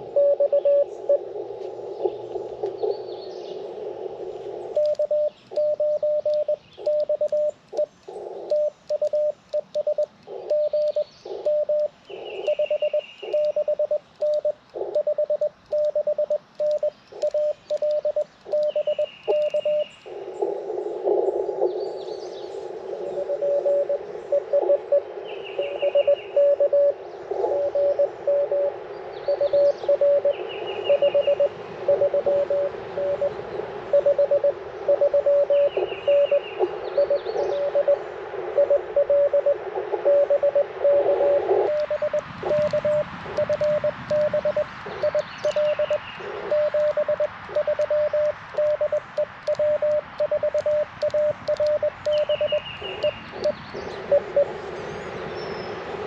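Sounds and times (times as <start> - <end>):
morse code tone: 0.0 - 1.2, 4.8 - 7.9, 8.5 - 19.9, 25.6 - 33.3, 33.9 - 54.5
faint radio crackles: 0.0 - 55.1
receiver hiss: 0.0 - 56.0.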